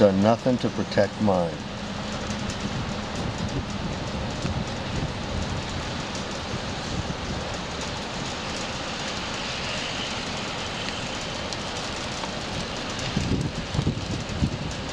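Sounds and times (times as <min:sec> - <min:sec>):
steady rain hissing: 0:00.0 - 0:14.9.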